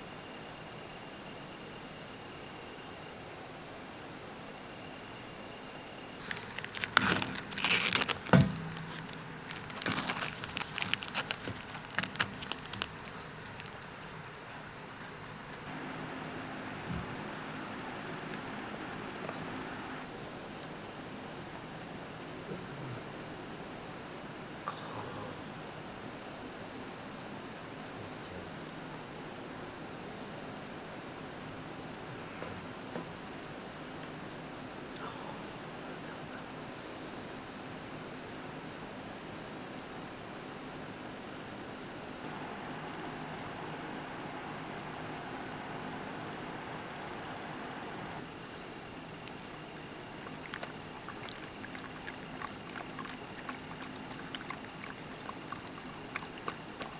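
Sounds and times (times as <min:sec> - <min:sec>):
insects trilling and chirping: 0:00.0 - 0:56.9
lower pulsing insect call: 0:00.0 - 0:56.9
creek water rushing: 0:49.1 - 0:56.9.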